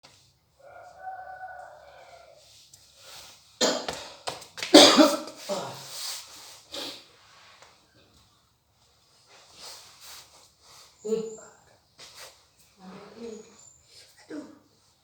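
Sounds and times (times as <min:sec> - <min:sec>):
person coughing harshly: 0:03.6 - 0:04.1, 0:04.7 - 0:05.8.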